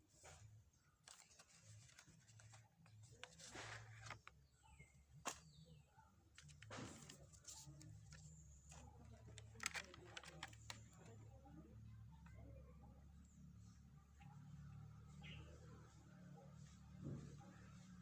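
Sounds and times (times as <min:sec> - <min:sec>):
packaging rustle: 0:01.0 - 0:04.4, 0:06.3 - 0:11.1.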